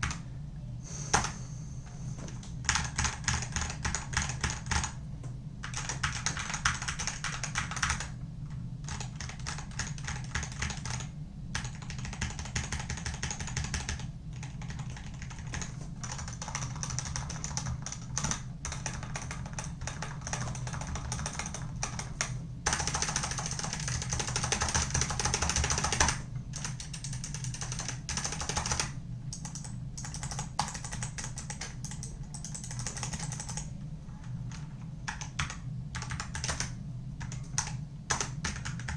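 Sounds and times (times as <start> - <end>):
keyboard typing clatter: 2.3 - 5.0, 5.6 - 8.1, 8.8 - 38.9.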